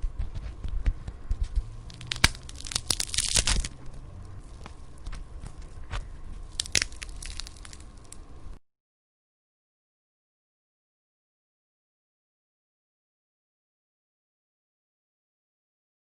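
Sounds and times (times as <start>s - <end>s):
bones cracking and snapping: 0.8s - 4.0s, 4.6s - 8.3s.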